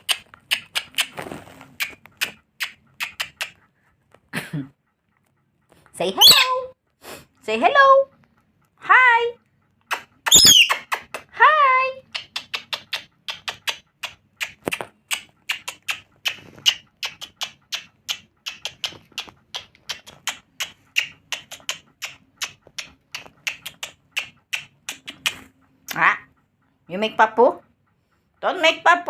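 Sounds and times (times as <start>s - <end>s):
parrot clicking and chipping: 0.0s - 3.8s, 9.8s - 11.3s, 12.0s - 26.4s.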